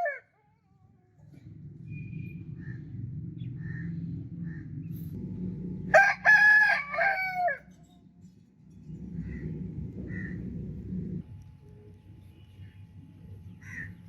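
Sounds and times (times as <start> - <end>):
low steady rumble: 0.0 - 14.0
rooster crowing: 5.9 - 7.8.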